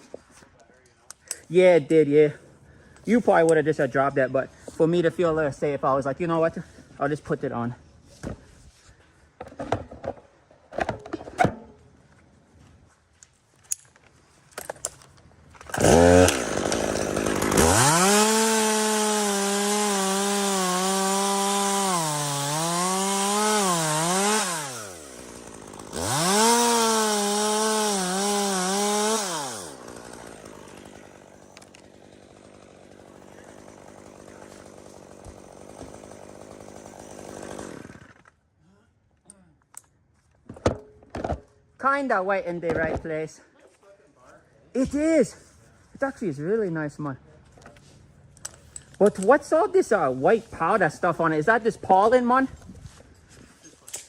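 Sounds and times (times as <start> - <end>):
two-stroke chainsaw running: 15.6 - 38.3.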